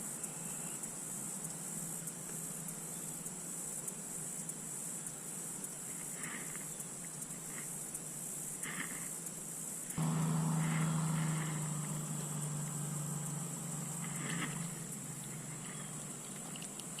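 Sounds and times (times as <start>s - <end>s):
steady high hiss: 0.0s - 17.0s
vehicle engine hum: 5.7s - 17.0s.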